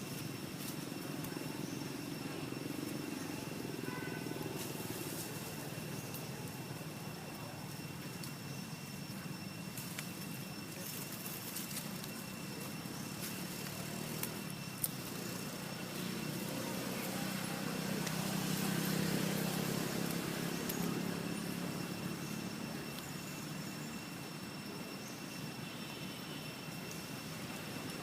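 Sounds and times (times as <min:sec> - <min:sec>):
traffic background: 0:00.0 - 0:28.0
vehicle engine and tyres passing: 0:13.2 - 0:23.0.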